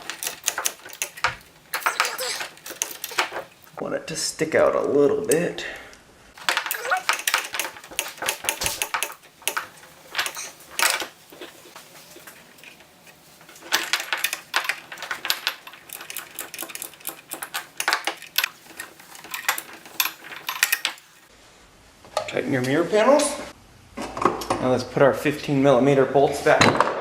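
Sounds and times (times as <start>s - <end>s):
metal tools clicking and clinking: 0.0s - 3.6s, 6.4s - 11.1s, 13.6s - 21.2s.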